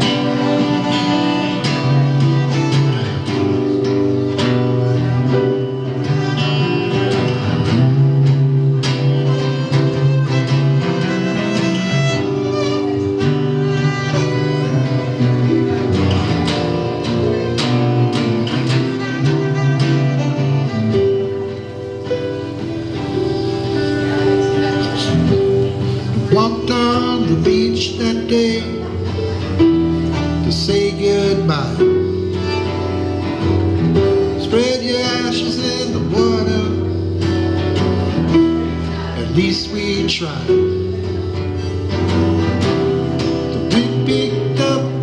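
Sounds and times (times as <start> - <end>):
long held notes: 0.0 - 45.0
plucked guitar notes: 0.0 - 45.0.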